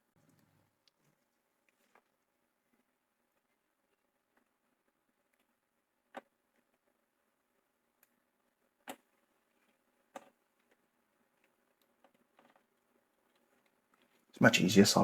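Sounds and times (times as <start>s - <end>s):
small sharp clicks: 5.3s - 14.3s.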